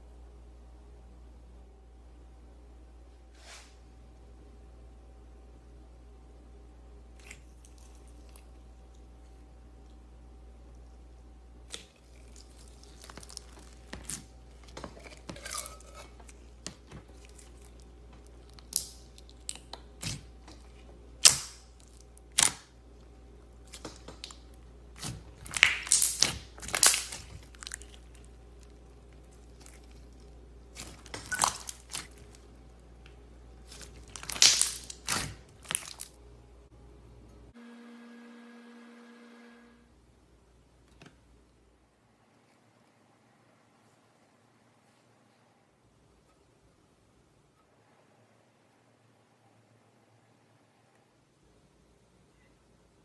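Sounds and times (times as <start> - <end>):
slime squishing and crackling: 11.6 - 32.9, 33.6 - 36.2.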